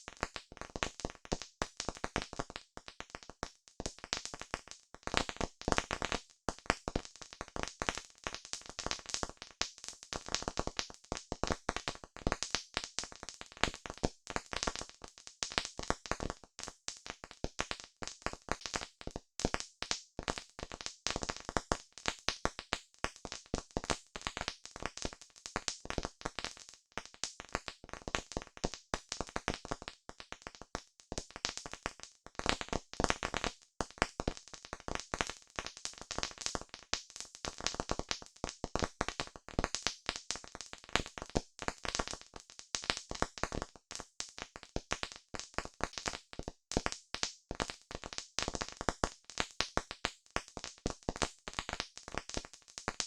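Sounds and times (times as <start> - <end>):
campfire crackling and popping: 31.1 - 53.0.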